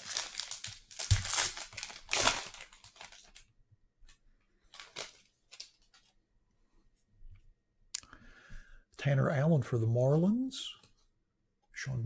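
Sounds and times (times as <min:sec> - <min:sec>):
wrapper tearing and crinkling: 0:00.0 - 0:03.5, 0:04.7 - 0:06.1.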